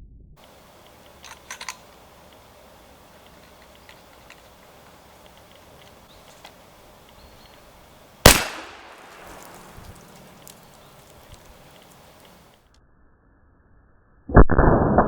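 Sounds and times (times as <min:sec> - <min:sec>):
shotgun shot with echo: 0:00.4 - 0:12.5.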